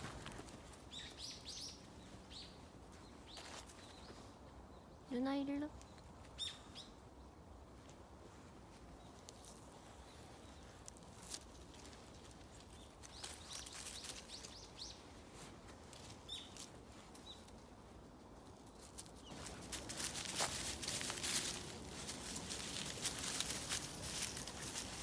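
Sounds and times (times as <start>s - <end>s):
bird chirp: 5.8s - 7.0s.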